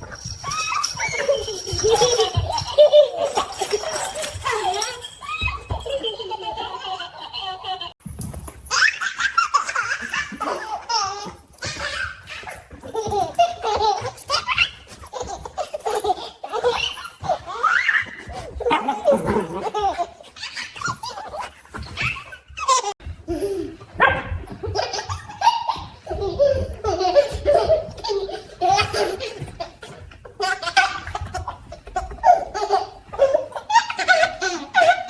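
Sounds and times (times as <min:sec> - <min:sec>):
baby giggling: 0:00.1 - 0:08.0.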